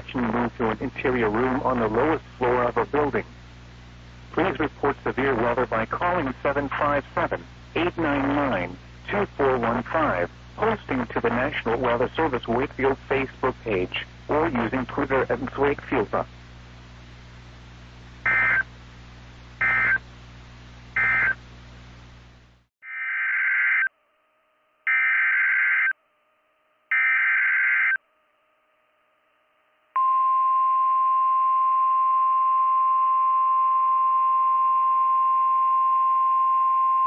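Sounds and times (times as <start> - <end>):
low radio hum: 0.0 - 22.7
harsh buzzing bursts: 18.2 - 18.7, 19.6 - 20.0, 21.0 - 21.4
data tone bursts: 18.3 - 18.7, 19.6 - 20.0, 21.0 - 21.4
steady warning alarm tone: 18.3 - 18.7, 19.6 - 20.0, 21.0 - 21.4, 24.9 - 26.0, 26.9 - 28.0.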